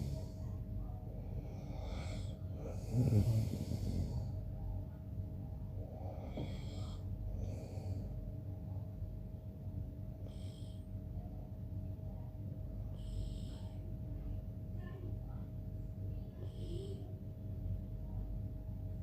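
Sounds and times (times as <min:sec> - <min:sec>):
soft breathing: 0:00.0 - 0:08.8, 0:10.0 - 0:11.3, 0:12.7 - 0:14.6, 0:15.2 - 0:17.5
man snoring: 0:01.6 - 0:04.2.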